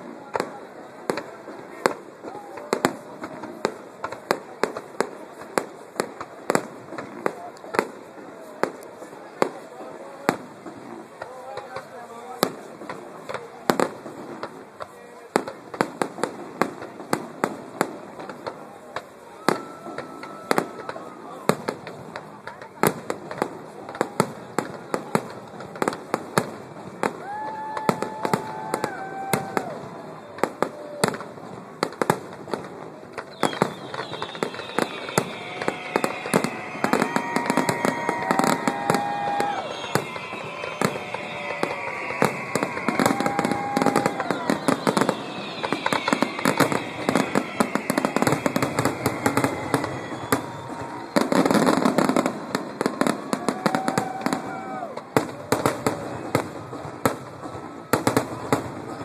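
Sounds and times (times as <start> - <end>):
firework bangs and crackles: 0.0 - 59.0
falling firework whistles: 19.2 - 21.8, 24.8 - 59.0.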